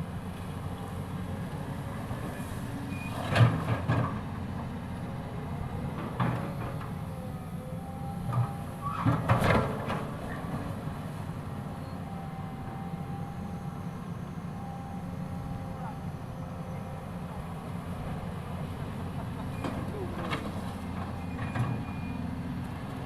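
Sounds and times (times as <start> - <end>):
excavator diesel engine running: 0.0 - 23.0
machine clunks and knocks: 6.1 - 6.9.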